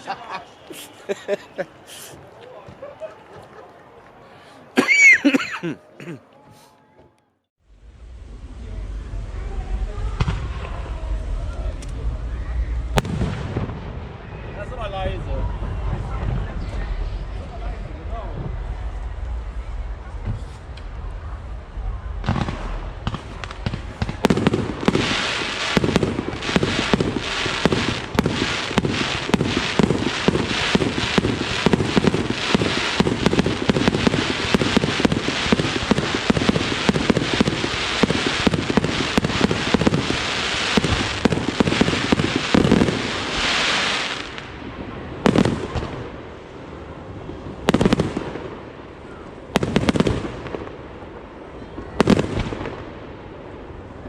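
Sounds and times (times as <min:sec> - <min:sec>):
fireworks bangs and crackles: 0:07.8 - 0:54.0.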